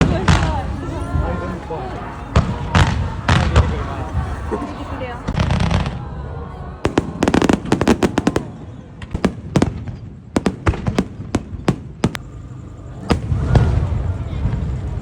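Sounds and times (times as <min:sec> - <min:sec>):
fireworks crackling pops: 0:06.9 - 0:12.3.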